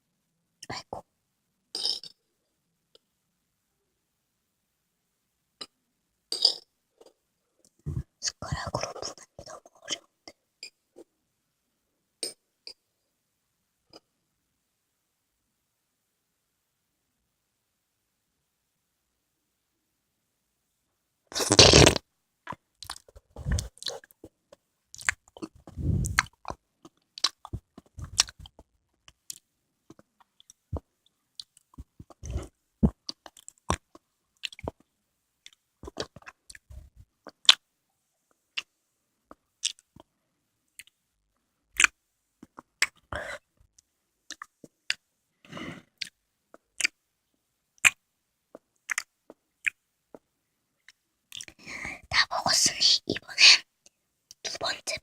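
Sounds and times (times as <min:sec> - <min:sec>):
mouth smacks and clicks: 0:21.4 - 0:24.3, 0:24.9 - 0:30.6, 0:31.4 - 0:37.6, 0:39.3 - 0:40.1, 0:40.8 - 0:41.0, 0:41.8 - 0:43.1, 0:43.8 - 0:45.0, 0:46.0 - 0:47.0, 0:47.8 - 0:55.0.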